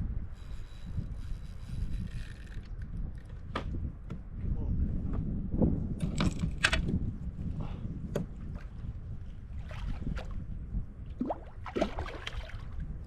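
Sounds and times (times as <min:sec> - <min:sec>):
low wind rumble: 0:00.0 - 0:13.0
water splashing against kayak: 0:11.2 - 0:12.8.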